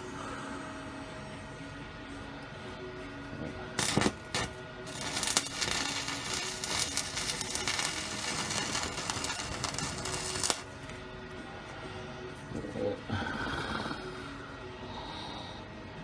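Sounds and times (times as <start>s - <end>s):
welder crackling: 3.8s - 11.0s.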